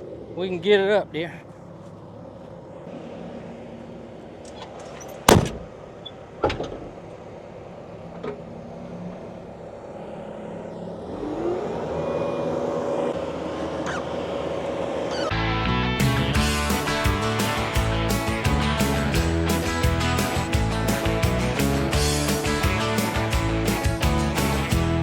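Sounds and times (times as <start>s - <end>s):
sharp bangs: 4.7s - 7.0s
music: 15.3s - 25.0s.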